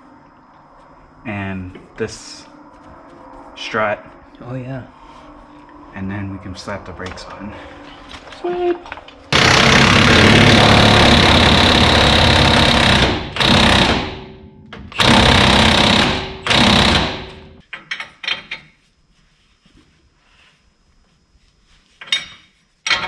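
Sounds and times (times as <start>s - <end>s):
impact wrench rattling: 9.3s - 14.3s, 14.9s - 18.5s.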